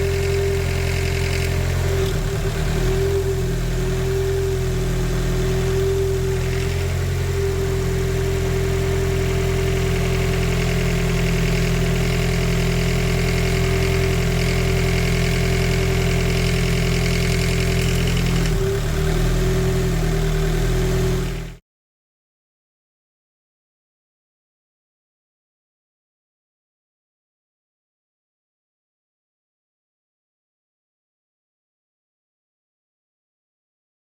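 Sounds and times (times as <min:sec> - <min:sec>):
car engine idling: 0:00.0 - 0:21.6.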